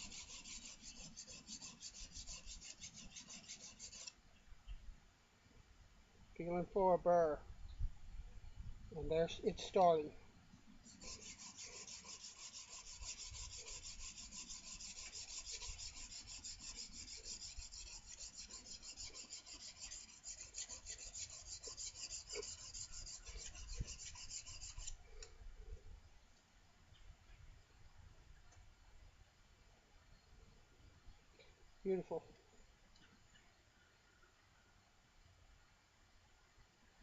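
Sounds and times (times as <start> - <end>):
blade scraping on sharpening plate: 0.0 - 4.1, 10.9 - 25.0.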